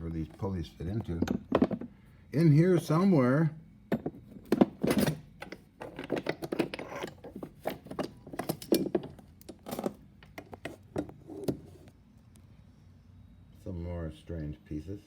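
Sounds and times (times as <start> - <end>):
small metal parts clinking: 0.9 - 11.1.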